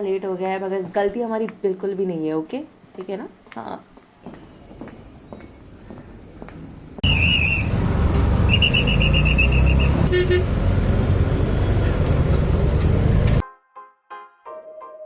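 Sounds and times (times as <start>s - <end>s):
road traffic rumble: 4.1s - 13.4s
deep horn blast: 7.8s - 12.3s
warbling car horn beeps: 8.5s - 10.6s.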